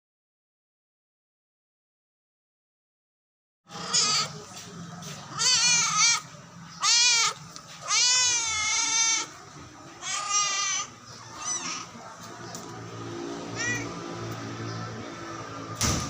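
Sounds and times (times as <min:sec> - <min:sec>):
kitten meowing: 0:06.8 - 0:09.3, 0:10.0 - 0:11.9, 0:13.5 - 0:14.0.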